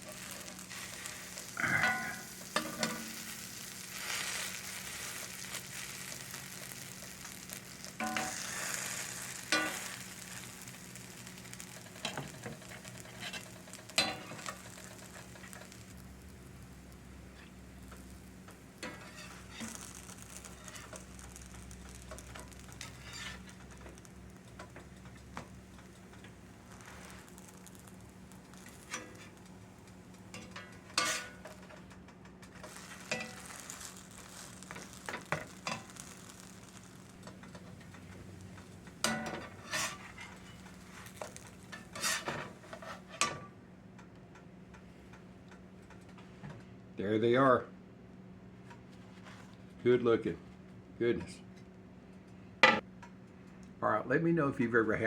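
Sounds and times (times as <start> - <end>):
pancakes sizzling in a pan: 0.0 - 43.4
utensil scraping and knocking pan: 8.0 - 8.9, 18.8 - 19.8, 22.1 - 23.8, 30.3 - 31.7, 32.6 - 33.8, 39.0 - 43.4.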